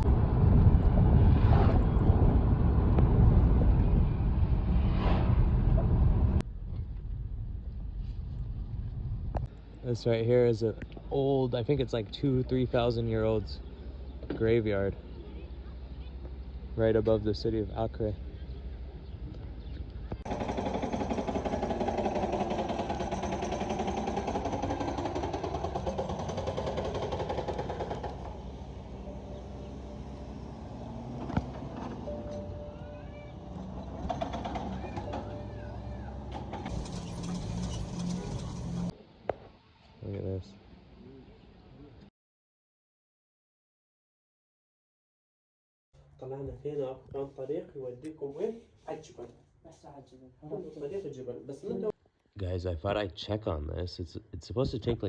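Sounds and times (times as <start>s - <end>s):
vehicle engine running: 18.2s - 38.9s
car driving road noise: 27.4s - 39.0s.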